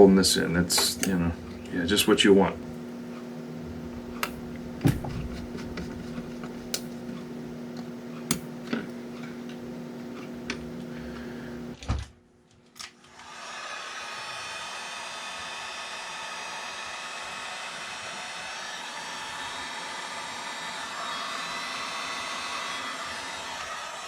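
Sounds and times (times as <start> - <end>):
electrical hum: 0.0 - 12.2, 14.2 - 24.0
knock: 4.8 - 6.0.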